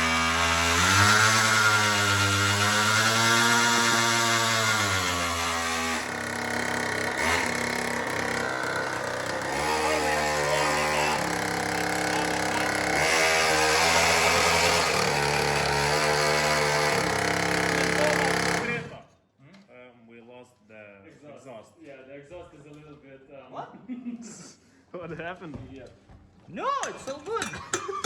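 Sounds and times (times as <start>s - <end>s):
small engine revving: 0.0s - 19.0s.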